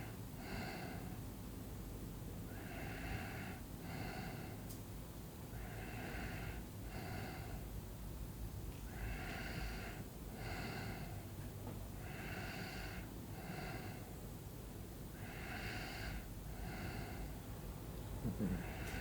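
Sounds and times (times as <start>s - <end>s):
person snoring: 18.3s - 19.0s.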